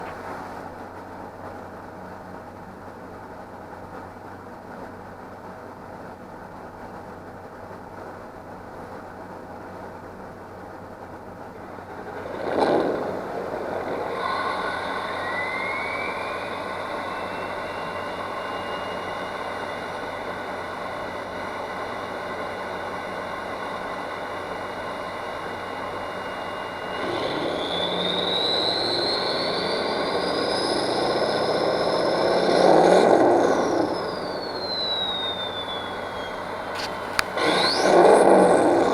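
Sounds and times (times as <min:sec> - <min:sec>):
low hum: 0:09.8 - 0:38.9
truck engine starting and idling: 0:11.6 - 0:38.9
engine revving: 0:11.8 - 0:38.9
turbo whistle: 0:11.8 - 0:38.9.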